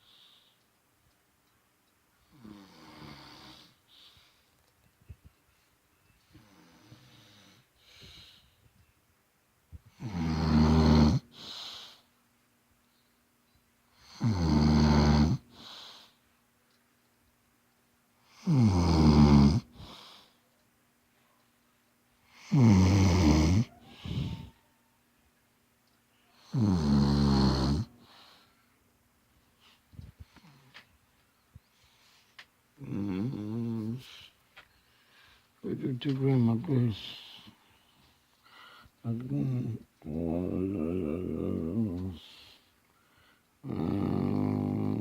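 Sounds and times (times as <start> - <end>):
soft breathing: 0.0 - 0.8, 2.2 - 4.7, 5.4 - 9.0, 19.7 - 21.6, 23.6 - 25.0, 27.9 - 43.8
man snoring: 2.3 - 3.8, 9.9 - 11.8, 14.0 - 15.8, 18.3 - 20.1, 22.3 - 24.6, 26.4 - 28.2, 32.8 - 34.2, 39.1 - 42.5, 43.6 - 45.0.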